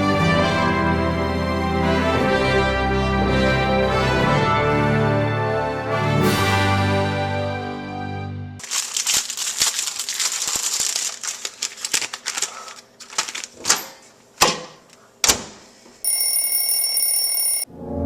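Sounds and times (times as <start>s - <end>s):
microwave beep: 16.0s - 17.7s.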